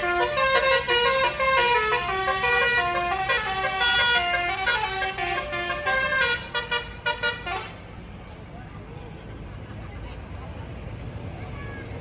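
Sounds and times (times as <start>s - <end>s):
musical air horn melody: 0.0s - 7.8s.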